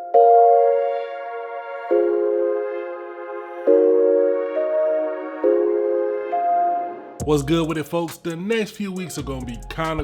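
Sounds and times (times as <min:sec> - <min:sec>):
ambient music of sustained chords: 0:00.0 - 0:07.2.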